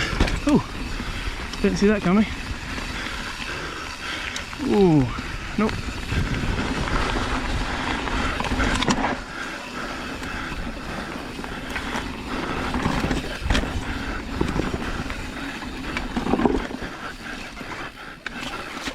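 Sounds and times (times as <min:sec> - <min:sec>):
bike knocks and rattles: 0:00.0 - 0:03.0, 0:11.5 - 0:16.9
bike tyres rumbling on dirt: 0:00.0 - 0:18.9
wind: 0:00.0 - 0:18.9.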